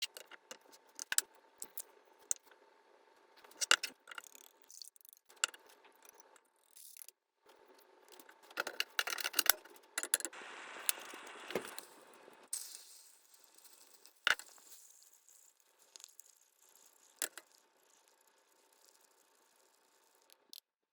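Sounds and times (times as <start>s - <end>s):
steady hiss: 10.3s - 14.7s.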